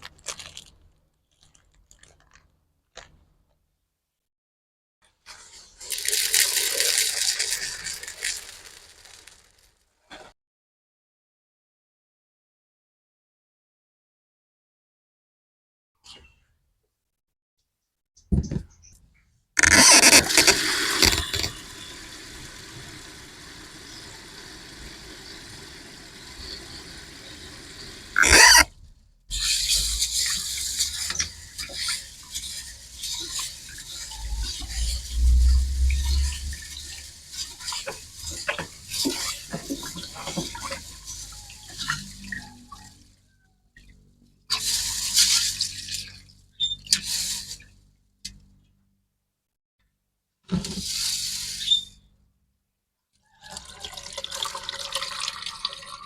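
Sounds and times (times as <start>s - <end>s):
water running from a tap: 5.8s - 9.6s, 19.8s - 28.6s, 30.0s - 42.8s, 53.4s - 56.0s.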